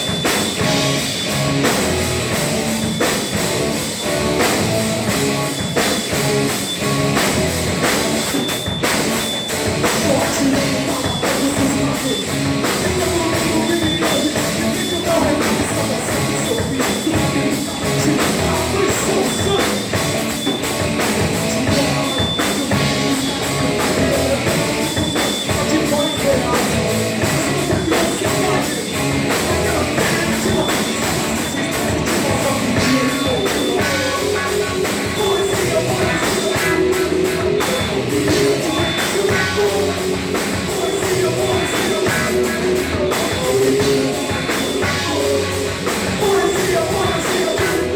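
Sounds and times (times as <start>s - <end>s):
bass guitar: 0.0s - 47.9s
distorted guitars: 0.0s - 47.9s
pounding drums: 0.0s - 47.9s.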